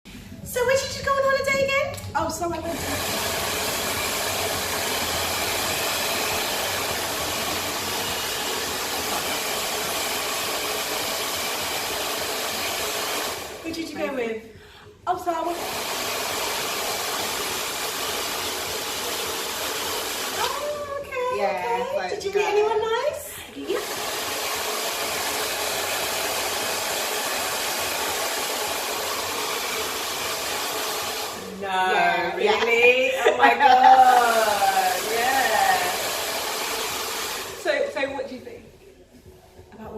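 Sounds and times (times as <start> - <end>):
hair dryer blowing: 2.6 - 14.2, 15.4 - 20.8, 23.5 - 31.7, 33.3 - 38.0.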